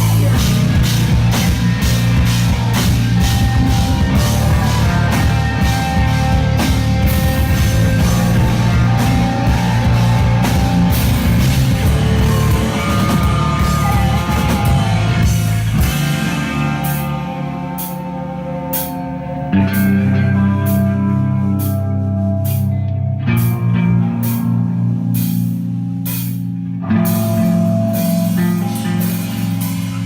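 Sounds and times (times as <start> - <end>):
pounding drums: 0.0 - 17.2
bass guitar: 0.0 - 30.0
distorted electric guitar: 0.0 - 30.0.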